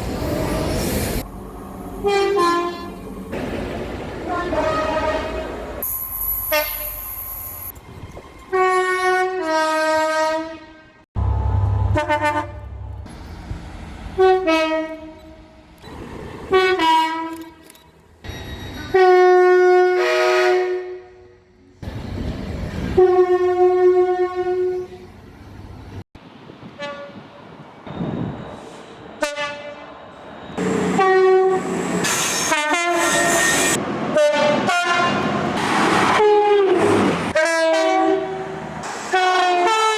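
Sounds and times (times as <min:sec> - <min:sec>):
passing trains rumbling and clattering: 0:00.0 - 0:39.9
two-tone train horns: 0:02.0 - 0:03.0, 0:04.3 - 0:05.8, 0:06.4 - 0:07.2, 0:08.5 - 0:13.0, 0:14.2 - 0:15.5, 0:16.5 - 0:17.6, 0:18.8 - 0:21.4, 0:22.9 - 0:25.0, 0:26.8 - 0:27.3, 0:29.2 - 0:30.0, 0:30.6 - 0:31.8, 0:32.4 - 0:35.4, 0:36.0 - 0:39.9.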